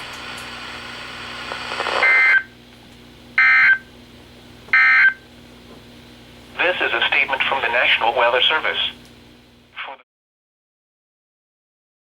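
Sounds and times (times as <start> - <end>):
faint radio hiss: 0.0 - 2.2, 6.6 - 9.0, 9.7 - 10.0.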